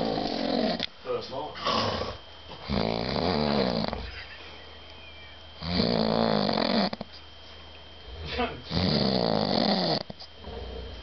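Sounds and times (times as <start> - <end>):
man snoring loudly: 0.0 - 0.8, 1.6 - 4.1, 5.6 - 7.0, 8.1 - 10.8.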